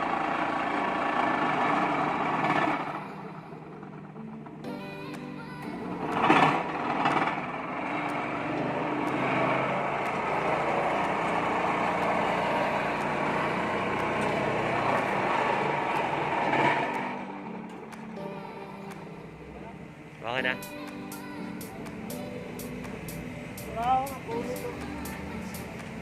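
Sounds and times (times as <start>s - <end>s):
vibratory hammer running: 0.0s - 26.0s.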